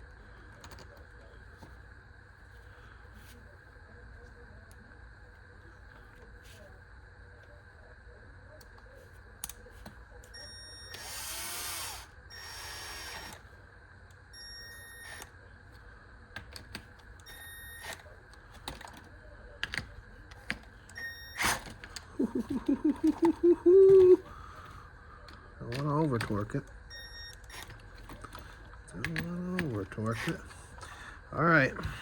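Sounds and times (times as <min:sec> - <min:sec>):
hand tools and plastic parts clicking: 0:16.4 - 0:30.9
brief whirring rasps: 0:21.2 - 0:21.8.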